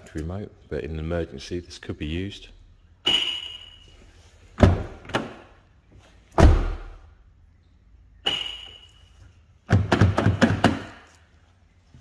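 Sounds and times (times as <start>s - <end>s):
car alarm chirp: 3.0s - 4.1s, 8.2s - 9.2s
knocks: 9.7s - 11.0s.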